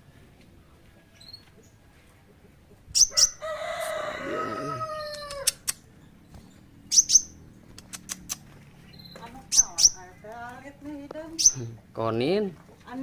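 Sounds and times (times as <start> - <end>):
songbird chirps: 0.0 - 4.0, 4.9 - 13.0
rooster crowing: 3.1 - 5.6.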